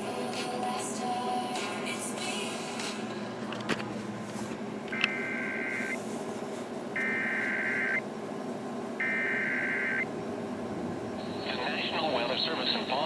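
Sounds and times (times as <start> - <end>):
digital data tone bursts: 9.0 - 10.1
radio hiss: 11.2 - 13.0.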